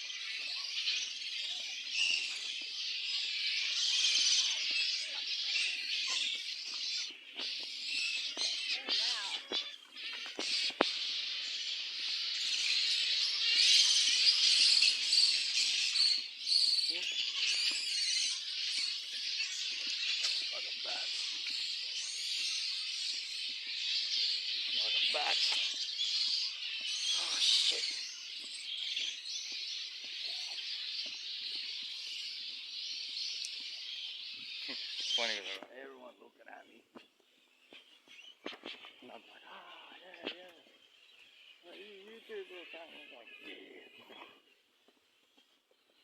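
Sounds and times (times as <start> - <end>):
flying foxes screeching: 0.0 - 44.6.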